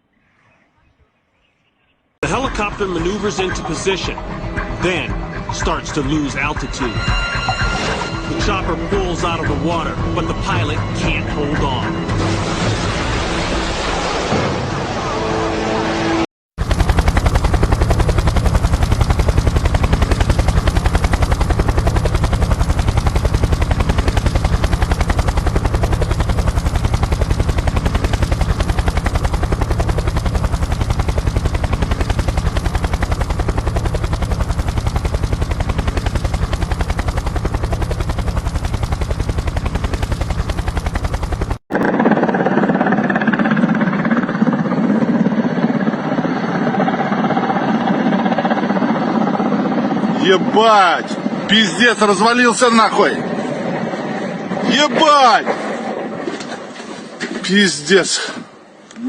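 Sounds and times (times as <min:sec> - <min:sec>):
helicopter rotor chopping: 0:02.2 - 0:12.1, 0:16.6 - 0:58.5
deep drone: 0:02.3 - 0:42.5.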